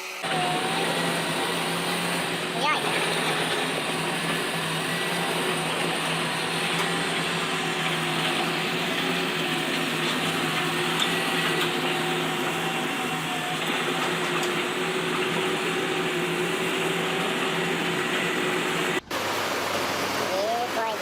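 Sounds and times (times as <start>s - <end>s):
diesel engine droning: 0.0s - 21.0s.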